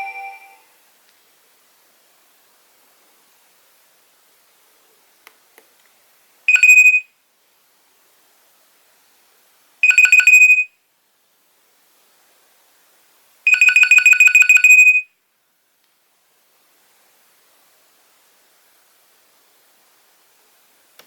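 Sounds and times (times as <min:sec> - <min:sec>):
mobile phone ringtone beeping: 0:00.0 - 0:00.6, 0:13.5 - 0:15.0.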